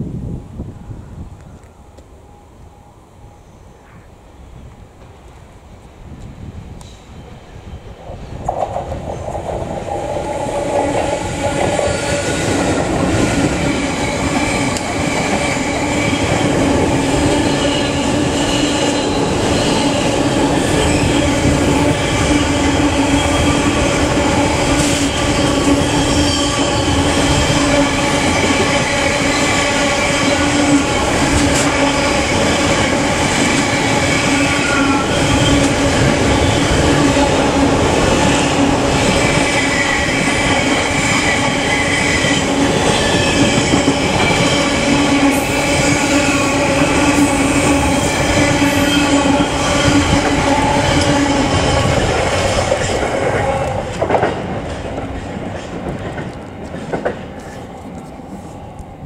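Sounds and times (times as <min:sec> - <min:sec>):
freight train rumbling on rails: 0:00.0 - 0:59.0.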